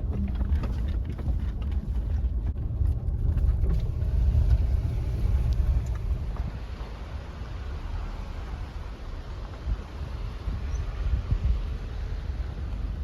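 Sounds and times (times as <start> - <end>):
knocks and rattles in car cabin: 0.0 - 6.6
car rumbling on rough road: 0.0 - 13.0.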